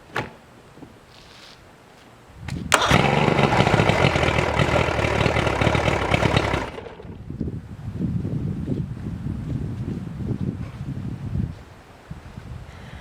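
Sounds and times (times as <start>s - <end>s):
starter turning over: 2.5s - 7.2s
outboard motor running: 2.7s - 7.2s.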